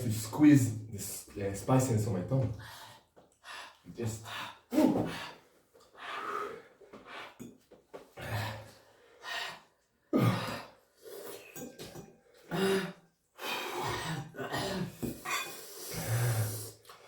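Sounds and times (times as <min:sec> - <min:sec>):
person panting and gasping: 0:12.4 - 0:16.8.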